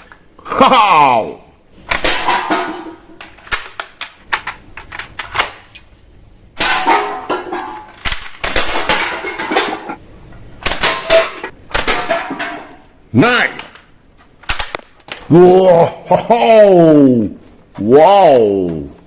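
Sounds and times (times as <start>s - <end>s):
rattling toy gunshots: 7.8s - 9.7s, 10.6s - 12.2s, 14.4s - 15.2s.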